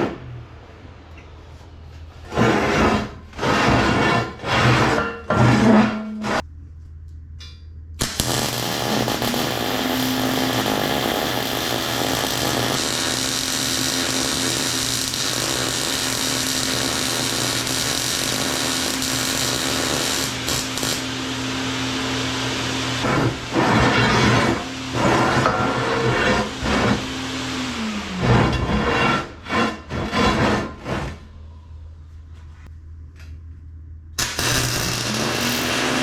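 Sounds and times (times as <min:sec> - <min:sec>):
power tool grinding into metal: 0:34.2 - 0:36.0.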